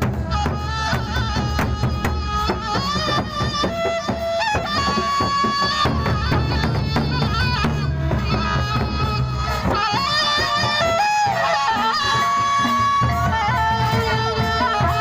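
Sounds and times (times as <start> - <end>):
drums beating: 0.0 - 15.0
reedy wind melody: 0.0 - 15.0.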